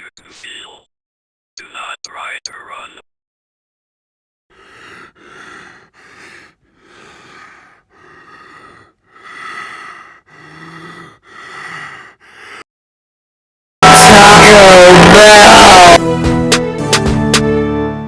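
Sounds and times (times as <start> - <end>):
heavy breathing: 4.5 - 12.7.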